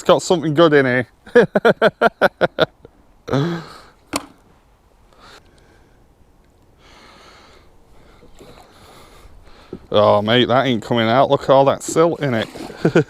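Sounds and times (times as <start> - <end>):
man laughing: 1.3 - 3.7, 12.7 - 13.0
faint breathing: 3.3 - 4.0, 5.1 - 9.9
sharp click: 4.1 - 4.4.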